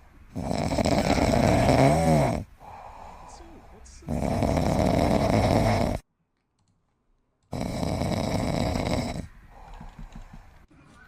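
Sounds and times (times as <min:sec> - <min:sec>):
pet snoring loudly: 0:00.3 - 0:03.2, 0:04.0 - 0:06.0, 0:07.5 - 0:09.9.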